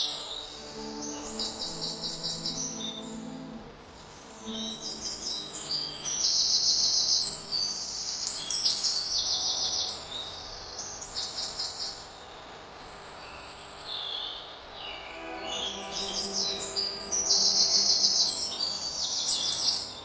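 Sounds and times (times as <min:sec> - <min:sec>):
small birds chirping: 0:04.4 - 0:12.5.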